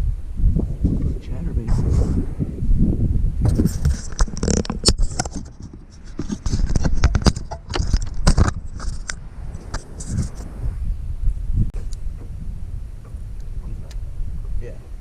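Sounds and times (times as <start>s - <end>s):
wind rumble on microphone: 0.0s - 15.0s
handling clicks taps and scrapes: 3.5s - 10.5s.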